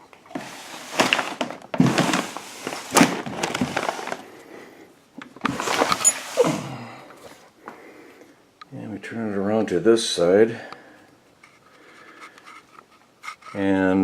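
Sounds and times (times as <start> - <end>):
handling knocks scrapes and rustles: 0.0 - 4.4, 5.3 - 7.4.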